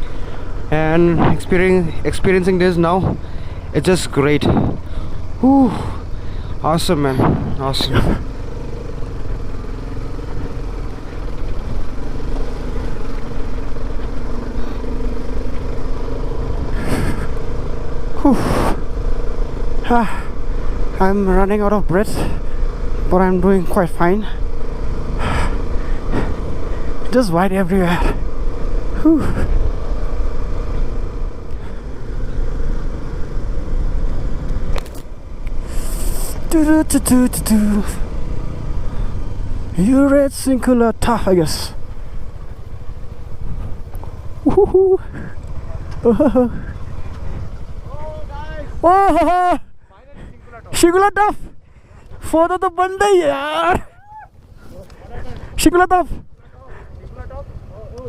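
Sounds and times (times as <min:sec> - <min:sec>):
motorcycle engine running: 0:00.0 - 0:58.0
wind rumble on microphone: 0:04.4 - 0:04.9.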